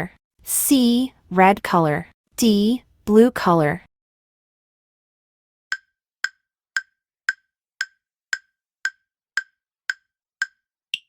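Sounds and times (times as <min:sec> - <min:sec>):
timer ticking: 0:05.7 - 0:11.0.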